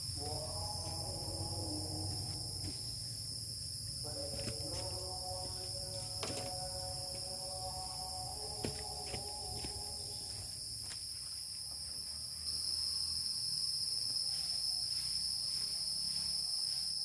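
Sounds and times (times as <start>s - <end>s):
faint droning tone: 0.0s - 10.7s
crickets and insects chirring: 0.0s - 17.0s.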